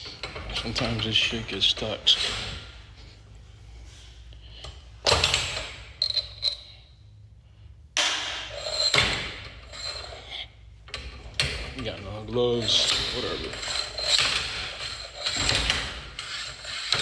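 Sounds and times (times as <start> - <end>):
metal scraping: 8.4 - 10.6, 11.8 - 17.0.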